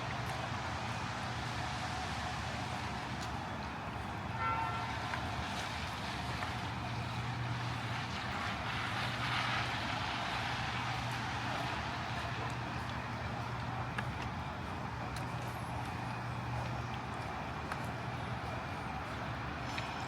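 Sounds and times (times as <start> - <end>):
hum of vehicles: 0.0 - 20.0
tyre hiss on wet road: 4.3 - 12.4.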